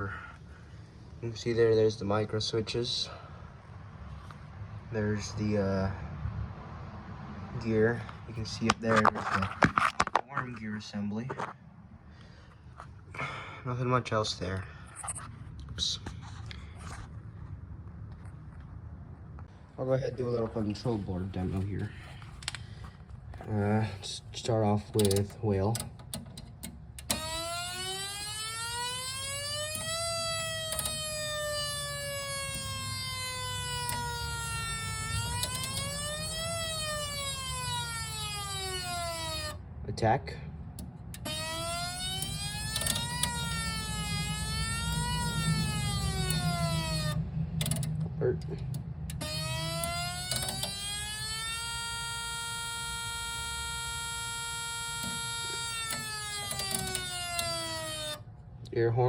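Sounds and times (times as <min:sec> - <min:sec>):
siren wail: 0:27.0 - 0:39.8, 0:41.2 - 0:48.0, 0:48.8 - 0:58.4.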